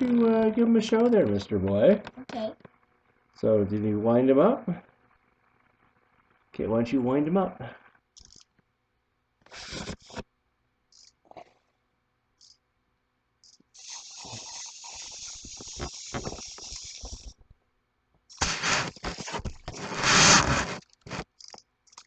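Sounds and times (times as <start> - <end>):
clockwork toy buzzing whir: 13.5 - 17.4.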